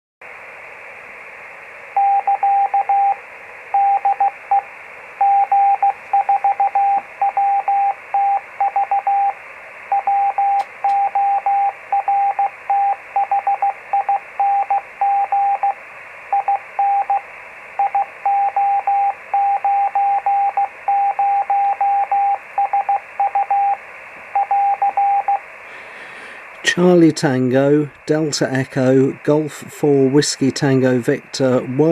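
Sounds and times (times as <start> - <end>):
receiver hiss: 0.2 - 31.9
morse code tone: 2.0 - 3.2, 3.8 - 4.6, 5.2 - 9.3, 9.9 - 17.2, 17.8 - 23.8, 24.4 - 25.4.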